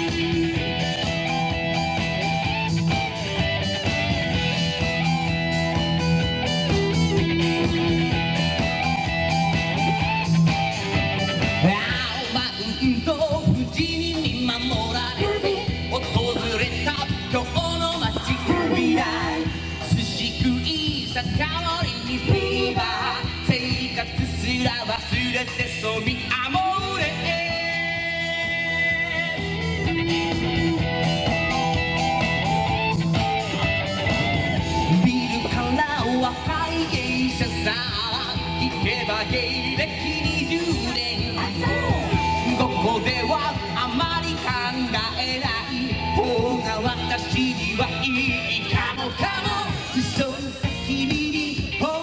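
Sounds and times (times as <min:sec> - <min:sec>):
pop-rock song: 0:00.0 - 0:52.0
strummed electric guitar: 0:00.0 - 0:52.0
steady drum beat: 0:00.1 - 0:25.8, 0:29.4 - 0:45.5.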